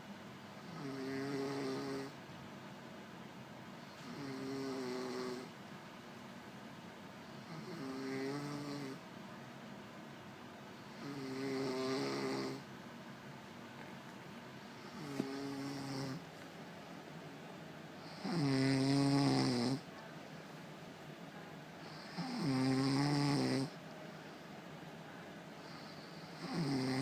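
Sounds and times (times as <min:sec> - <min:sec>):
woman snoring: 0:00.6 - 0:02.2, 0:03.9 - 0:05.5, 0:07.3 - 0:09.0, 0:10.8 - 0:12.7, 0:14.7 - 0:16.2, 0:18.0 - 0:19.9, 0:21.8 - 0:23.8, 0:25.6 - 0:27.0.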